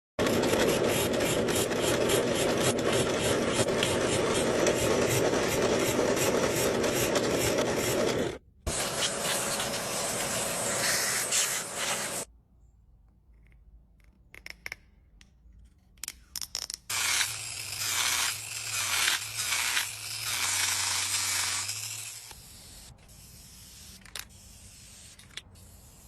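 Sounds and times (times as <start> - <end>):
wood being rasped: 0.2 - 12.3.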